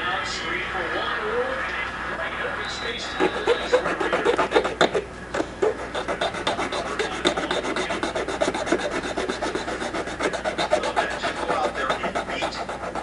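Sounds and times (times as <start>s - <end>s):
file scraping plastic: 3.0s - 13.0s.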